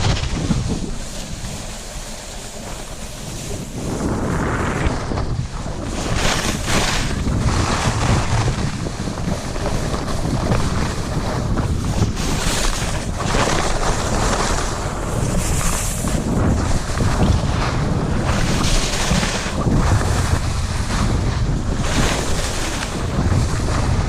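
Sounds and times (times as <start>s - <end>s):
skis scraping on snow: 0.0s - 24.0s
wind rushing over microphone: 0.0s - 24.0s.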